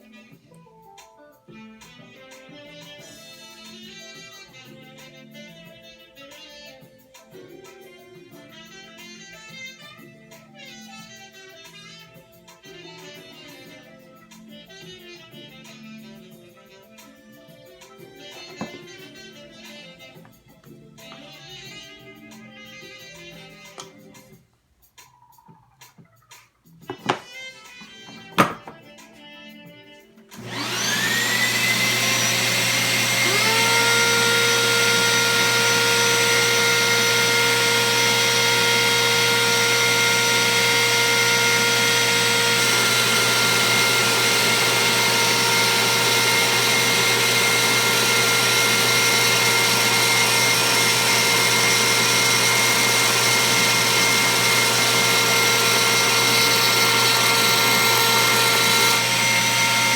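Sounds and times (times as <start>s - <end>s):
router motor whining: 30.4s - 59.9s
second motor whining: 30.4s - 59.9s.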